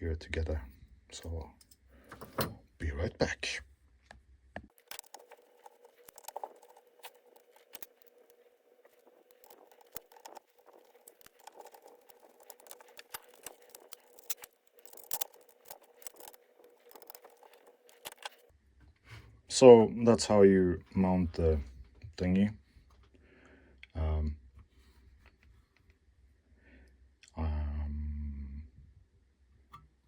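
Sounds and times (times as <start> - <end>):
small parts clicking and rattling: 4.7 - 18.5.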